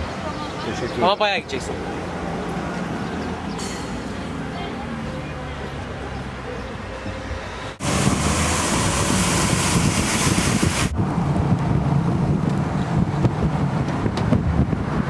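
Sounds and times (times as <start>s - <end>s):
low rumble of moving vehicle: 0.0s - 15.0s
wind buffeting microphone: 7.8s - 15.0s.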